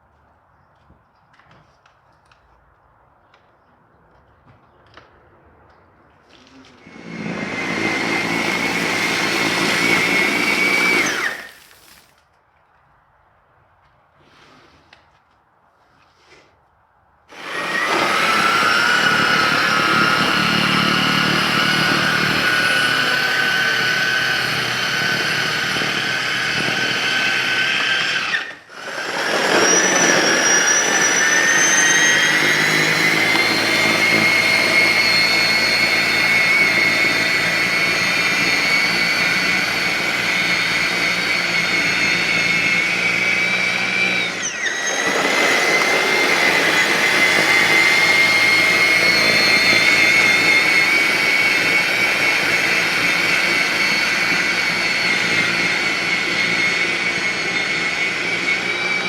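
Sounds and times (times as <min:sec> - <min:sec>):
snow blower motor whine: 0:06.3 - 0:11.8, 0:17.3 - 0:59.0.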